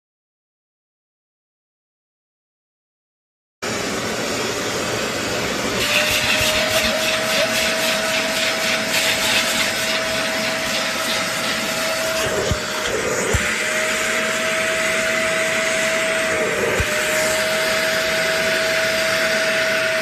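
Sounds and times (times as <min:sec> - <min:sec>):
carpet cleaner suction motor hissing: 0:03.7 - 0:20.0
steady motor whine: 0:03.7 - 0:20.0.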